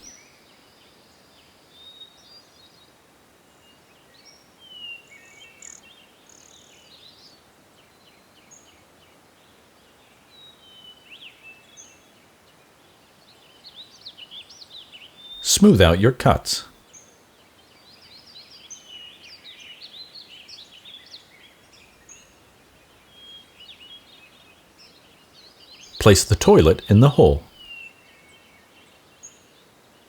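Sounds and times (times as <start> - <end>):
outdoor background hiss: 15.5 - 16.7, 26.0 - 27.5.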